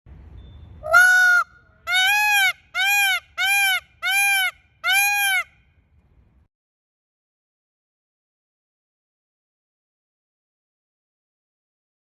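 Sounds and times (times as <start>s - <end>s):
peacock calling: 0.4s - 5.7s.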